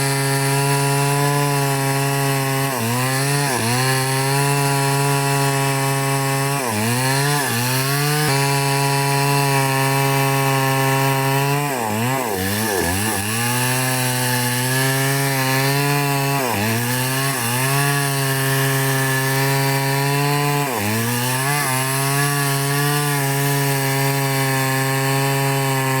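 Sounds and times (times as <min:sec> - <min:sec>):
chainsaw cutting wood: 0:00.0 - 0:26.0.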